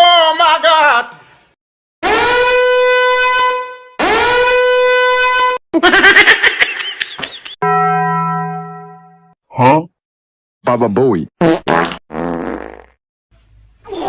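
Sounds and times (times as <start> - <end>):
long steady horn blasts: 2.0 - 5.6.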